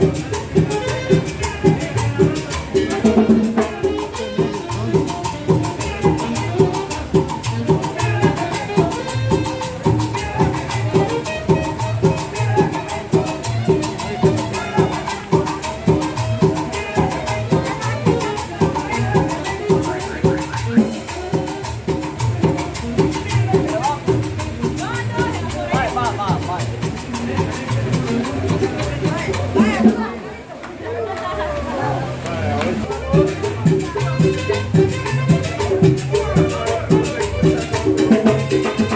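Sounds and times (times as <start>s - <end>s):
shaker percussion: 0.0s - 30.3s, 32.1s - 38.9s
latin dance music: 0.0s - 38.9s.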